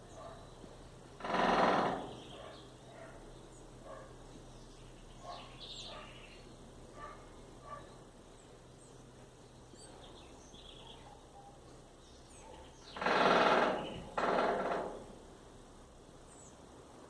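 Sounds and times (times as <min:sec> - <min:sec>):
woodpecker drumming on metal gutter: 0:00.0 - 0:04.1, 0:12.6 - 0:15.6.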